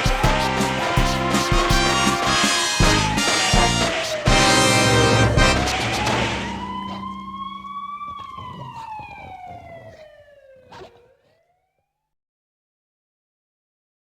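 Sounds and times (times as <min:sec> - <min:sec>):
band music: 0:00.0 - 0:07.0
wailing siren: 0:00.0 - 0:11.9.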